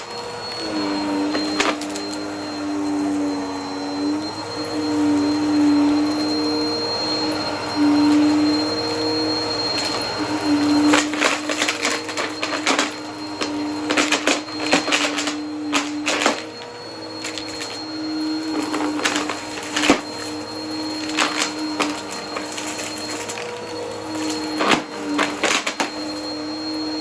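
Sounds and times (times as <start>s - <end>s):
vacuum cleaner motor hum: 0.0s - 27.0s
debris clicking and crackling: 10.8s - 16.5s.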